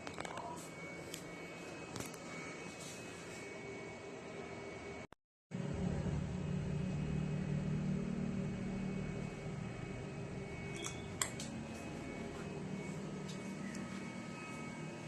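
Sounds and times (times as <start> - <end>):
fan humming: 5.5 - 15.0.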